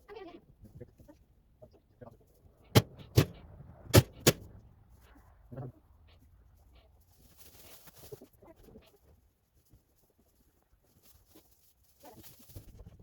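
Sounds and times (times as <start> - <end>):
sharp knocks: 2.8 - 3.4, 4.0 - 4.5.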